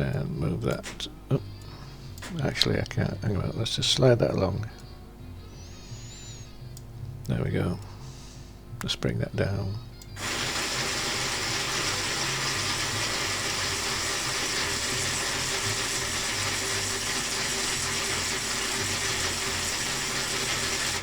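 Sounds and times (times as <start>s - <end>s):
geared motor whirring: 10.0s - 21.0s.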